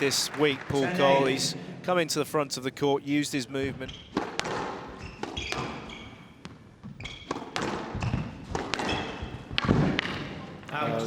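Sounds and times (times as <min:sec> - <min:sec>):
shoes squeaking on court: 0:03.8 - 0:10.8
squash ball hits: 0:04.1 - 0:05.9, 0:07.3 - 0:10.4.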